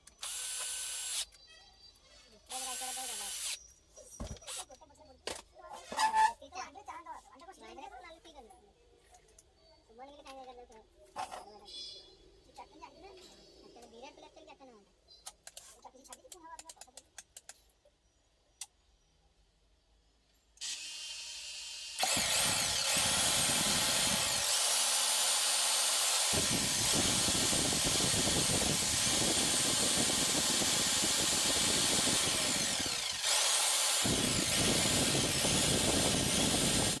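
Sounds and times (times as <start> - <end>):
electric demolition hammer running: 21.9 - 37.0.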